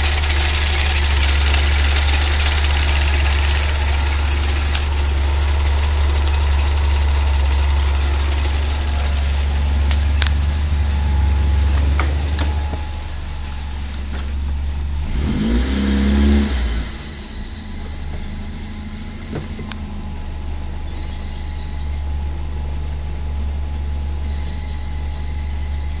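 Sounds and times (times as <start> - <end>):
sharp engine ticks: 0.0 - 11.2
car engine idling and revving: 0.0 - 26.0.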